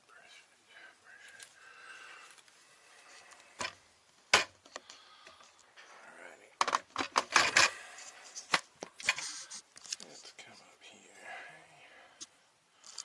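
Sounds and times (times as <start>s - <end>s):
hard objects clicking and clattering: 6.6s - 7.8s.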